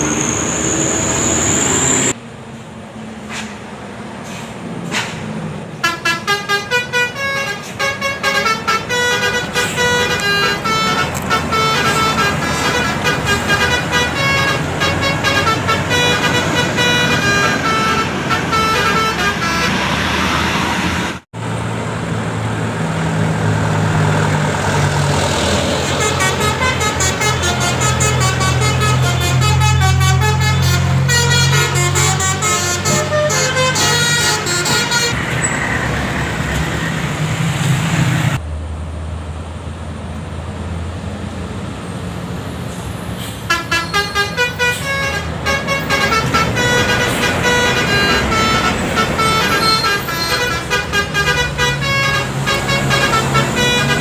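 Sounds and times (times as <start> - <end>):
bus engine humming: 0.0 - 54.0
horn pulsing notes: 5.8 - 20.8, 25.8 - 35.2, 43.5 - 54.0
multi-tone bus air horn: 5.8 - 21.1, 25.8 - 35.2, 43.2 - 54.0.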